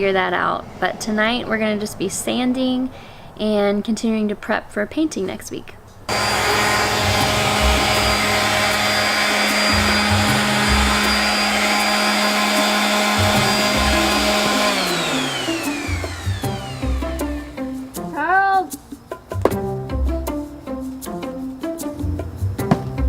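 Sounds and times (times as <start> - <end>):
electric sander whining: 6.1 - 18.0
sander spinning down: 6.1 - 18.0.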